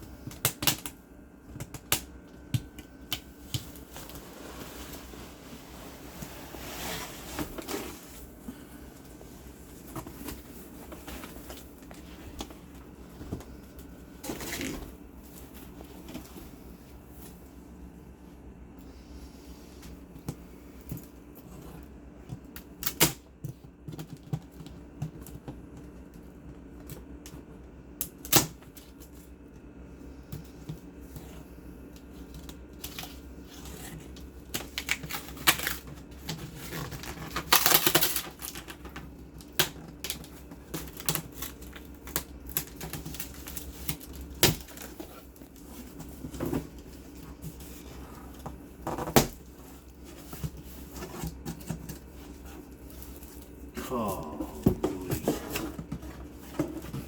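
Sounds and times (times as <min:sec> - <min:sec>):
packaging scraping rustle: 0:03.7 - 0:08.4, 0:32.8 - 0:53.6
cardboard packaging clicks and knocks: 0:22.3 - 0:29.1, 0:33.8 - 0:53.5.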